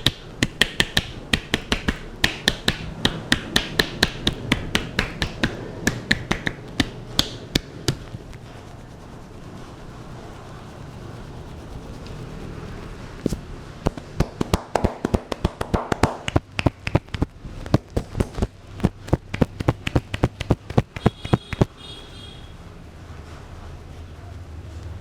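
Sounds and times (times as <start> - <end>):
hands slapping on head: 0.0 - 8.2, 13.2 - 21.7.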